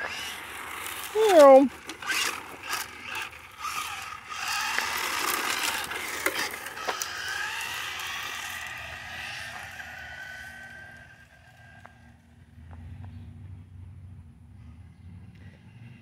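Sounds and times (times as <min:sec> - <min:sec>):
electric motor whining: 0:00.0 - 0:12.2
gravel crunching: 0:00.0 - 0:16.0.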